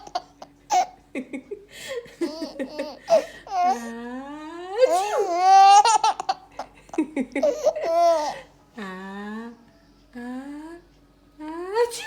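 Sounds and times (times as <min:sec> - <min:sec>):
baby laughing: 0:00.0 - 0:01.0, 0:02.2 - 0:03.8, 0:04.9 - 0:08.4.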